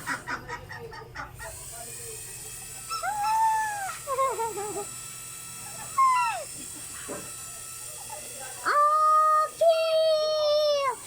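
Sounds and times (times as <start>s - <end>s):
animal calls: 2.9s - 4.0s.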